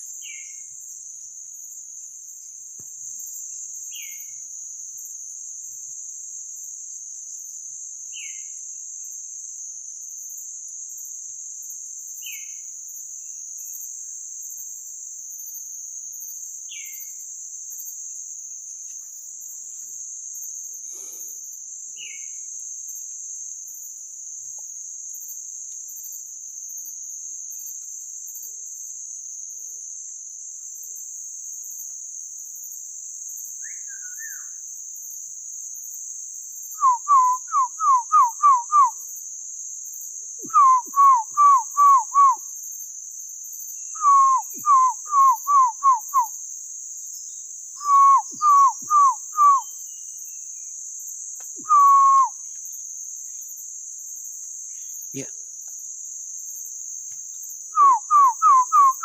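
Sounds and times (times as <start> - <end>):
forest insects droning: 0.0 - 59.0
person whistling bird-like calls: 36.8 - 39.0, 40.4 - 42.4, 44.0 - 46.3, 47.8 - 49.8, 51.6 - 52.4, 57.8 - 59.0.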